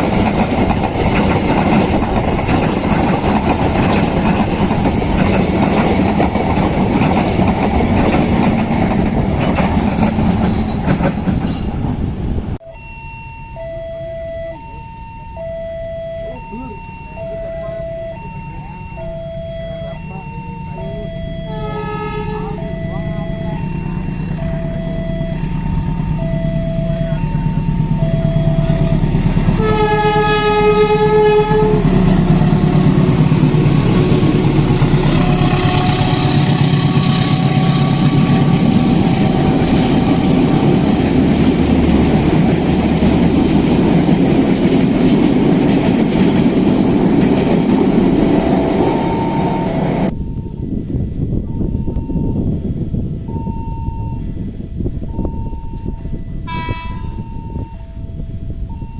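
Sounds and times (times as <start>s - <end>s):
train rumble and wheel clatter: 0.0s - 12.7s, 15.7s - 58.9s
two-tone crossing alarm: 0.0s - 58.9s
train horn: 20.8s - 40.9s, 48.8s - 50.1s, 55.8s - 58.5s.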